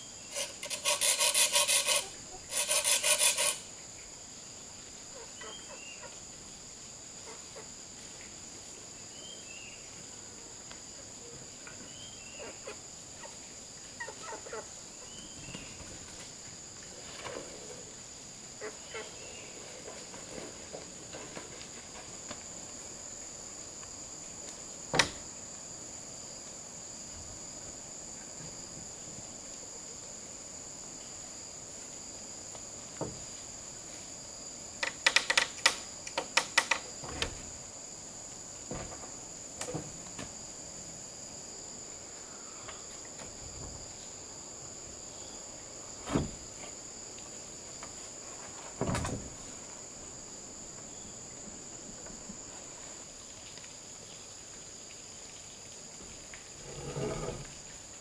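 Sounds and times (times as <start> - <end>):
high-pitched insect buzz: 0.0 - 3.8.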